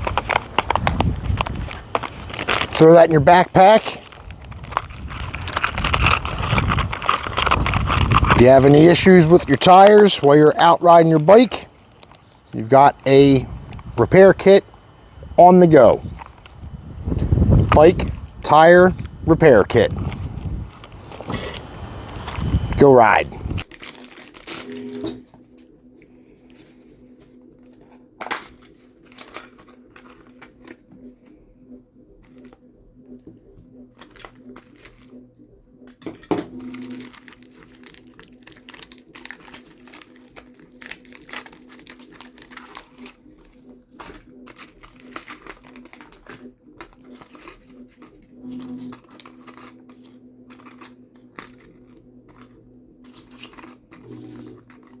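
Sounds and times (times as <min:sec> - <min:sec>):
handling rustles and taps: 0:00.0 - 0:02.8
steady low hum: 0:00.0 - 0:55.0.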